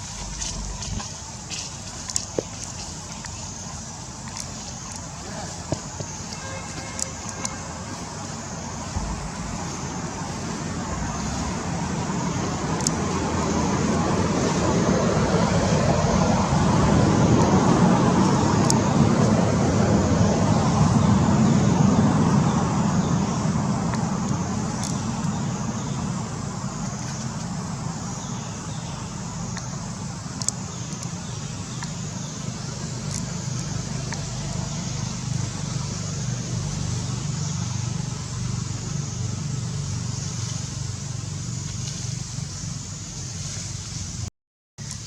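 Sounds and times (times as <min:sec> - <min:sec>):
road traffic rumble: 0:00.0 - 0:45.0
faint clicks: 0:30.4 - 0:31.1.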